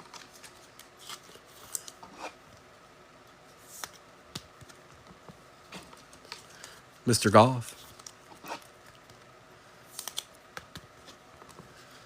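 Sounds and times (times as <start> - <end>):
cards rustling and scraping: 0.0 - 2.4, 3.5 - 4.0, 4.6 - 6.8, 7.7 - 9.3.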